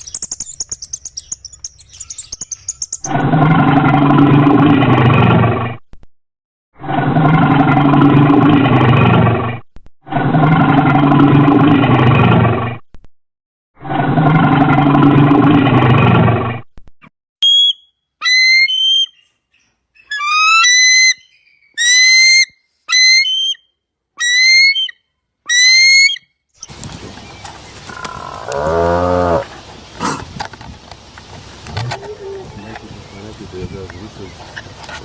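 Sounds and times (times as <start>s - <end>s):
short high whistled calls: 0.0s - 3.2s, 17.4s - 19.3s
animal roar: 3.1s - 5.8s, 6.8s - 12.8s, 13.8s - 16.6s, 27.9s - 30.3s, 31.7s - 32.8s
low noisy animal call: 27.8s - 30.3s, 31.7s - 33.6s.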